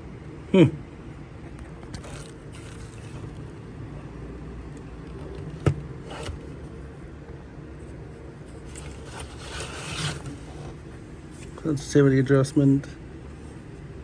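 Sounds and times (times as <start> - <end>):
steady low hum: 0.0 - 14.0
rustling: 2.0 - 3.5, 8.4 - 11.6.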